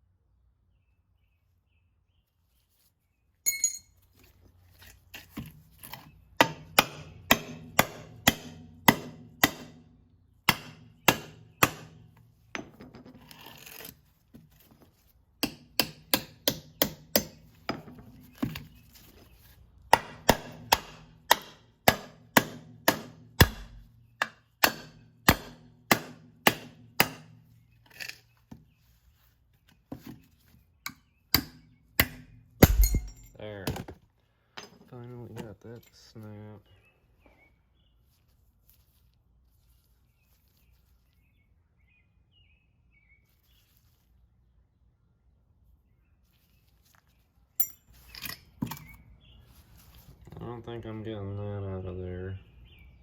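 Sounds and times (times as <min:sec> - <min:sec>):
hammer striking a knife: 0:06.4 - 0:09.8, 0:10.5 - 0:12.7, 0:15.4 - 0:17.4, 0:19.9 - 0:27.4, 0:30.9 - 0:33.3.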